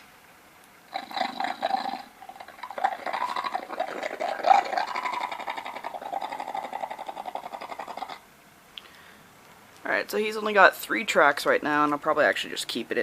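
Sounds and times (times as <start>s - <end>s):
monster growl through small speaker: 0.9s - 8.2s.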